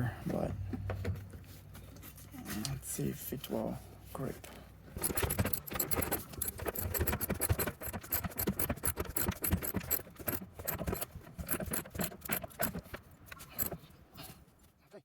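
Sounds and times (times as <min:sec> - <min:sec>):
ratchet wrench clicking: 0:05.0 - 0:13.8.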